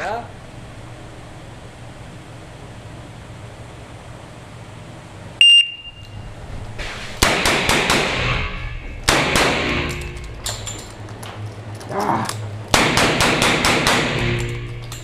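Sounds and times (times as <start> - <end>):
shot timer beep: 5.4 - 6.2.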